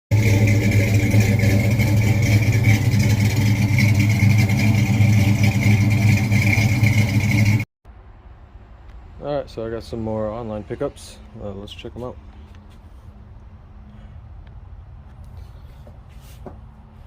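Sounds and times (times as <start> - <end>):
engine running: 0.1 - 7.7.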